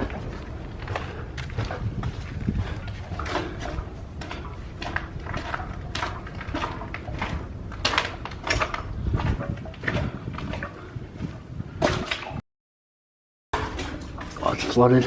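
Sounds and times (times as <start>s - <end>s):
footsteps scuffing in tunnel: 0.0s - 11.8s
low rumble on microphone: 0.0s - 12.4s.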